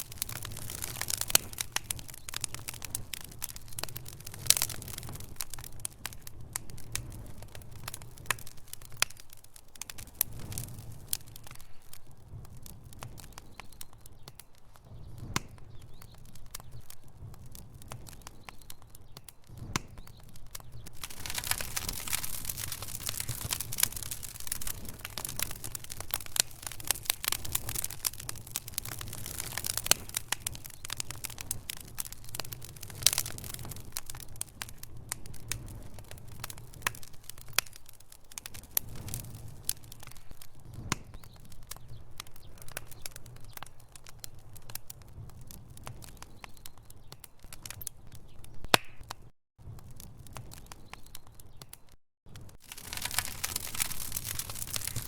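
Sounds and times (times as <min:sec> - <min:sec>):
wood fire crackling and popping: 0:00.0 - 0:55.0.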